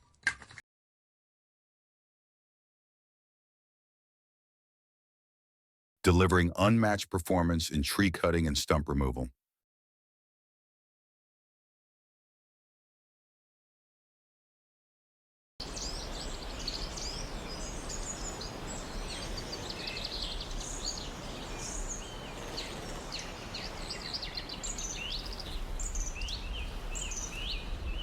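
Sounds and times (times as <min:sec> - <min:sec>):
songbirds chirping: 0:15.6 - 0:28.0.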